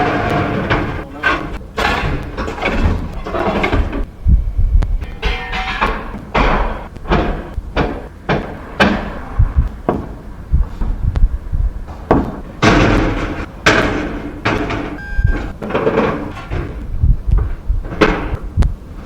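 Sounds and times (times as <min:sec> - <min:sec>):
hard objects banging and clattering: 0:00.0 - 0:19.0.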